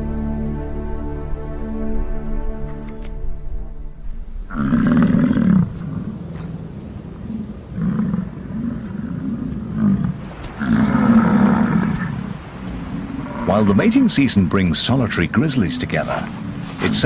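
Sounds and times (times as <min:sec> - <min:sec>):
bison bellowing: 0:04.5 - 0:06.2, 0:07.7 - 0:12.3.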